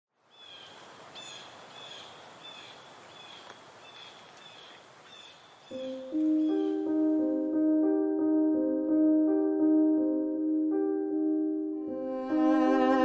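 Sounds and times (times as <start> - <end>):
faint hiss: 0.2 - 6.4
piano notes: 5.7 - 13.0.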